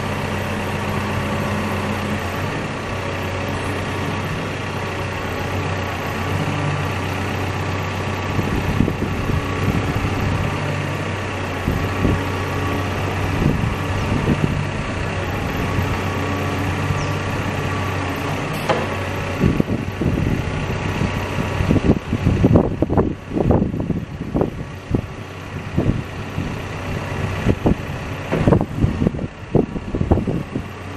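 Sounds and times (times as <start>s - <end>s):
diesel engine running: 0.0s - 30.9s
clunks and knocks: 18.2s - 19.2s, 28.2s - 28.7s.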